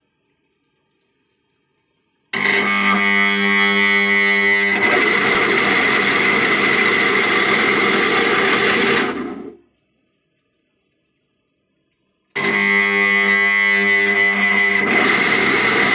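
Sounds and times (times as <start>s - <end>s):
electric motor humming: 2.4s - 9.6s
motor running roughly: 2.4s - 9.6s, 12.4s - 15.9s.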